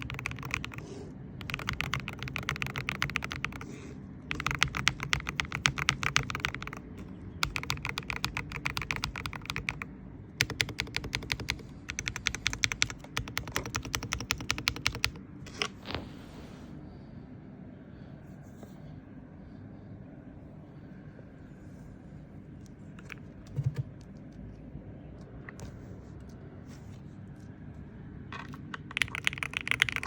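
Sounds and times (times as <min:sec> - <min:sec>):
typing on mechanical keyboard: 0:00.0 - 0:03.7, 0:04.3 - 0:15.2, 0:23.0 - 0:24.4, 0:28.3 - 0:30.0.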